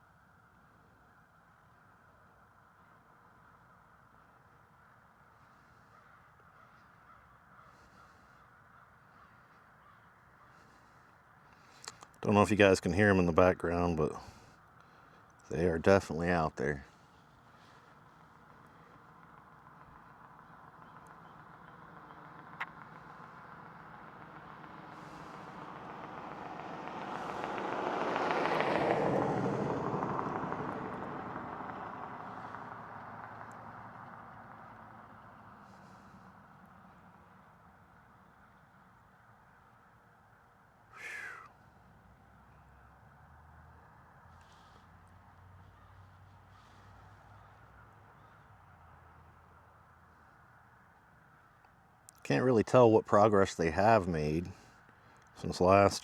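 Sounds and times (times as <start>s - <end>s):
crows cawing faintly: 4.8s - 12.1s, 14.1s - 15.4s, 16.9s - 25.6s, 34.5s - 37.5s, 40.9s - 42.3s, 43.7s - 52.2s
road vehicle passing by: 15.4s - 51.5s.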